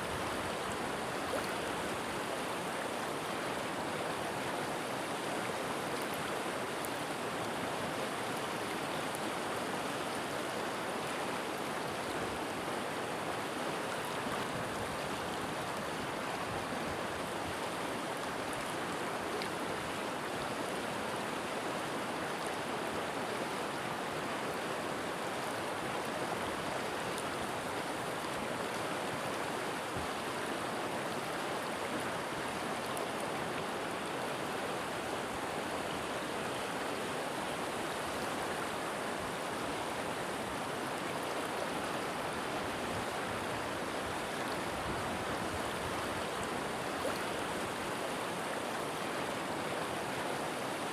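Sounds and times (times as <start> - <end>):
river water rushing: 0.0 - 50.9.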